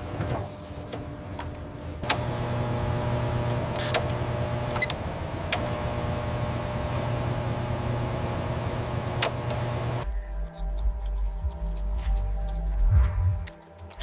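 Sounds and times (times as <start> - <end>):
factory machinery humming: 0.0 - 10.3
sharp mechanical clicks: 3.2 - 5.8, 9.1 - 9.8.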